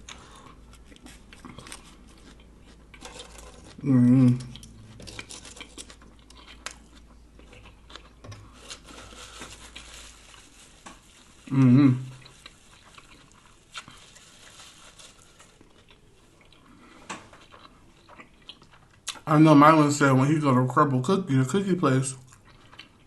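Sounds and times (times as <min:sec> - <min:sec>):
person chewing sandwich: 0:00.0 - 0:19.2, 0:22.2 - 0:23.0
person humming mmm: 0:03.8 - 0:04.7, 0:11.4 - 0:12.2.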